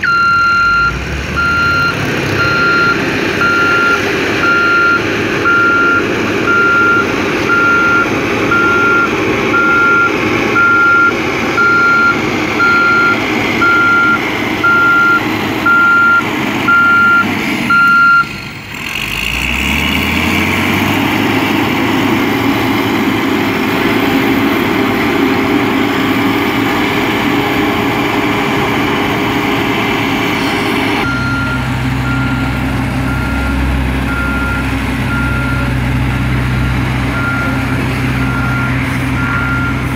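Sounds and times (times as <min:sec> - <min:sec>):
reversing alarm beeping: 0:00.0 - 0:18.6, 0:31.0 - 0:35.7, 0:37.1 - 0:39.9
construction machine engine: 0:00.0 - 0:39.9.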